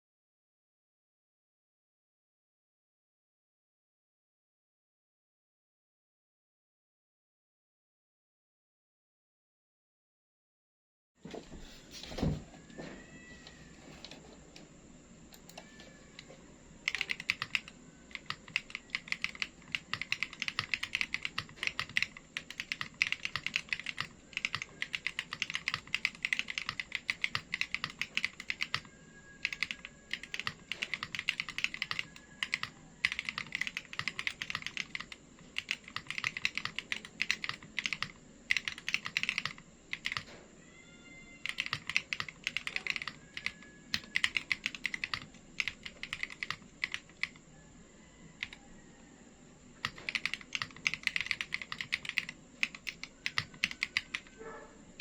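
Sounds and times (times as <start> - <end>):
mechanical keyboard typing: 16.9 - 40.3, 41.4 - 47.4, 48.4 - 48.6, 49.8 - 54.4.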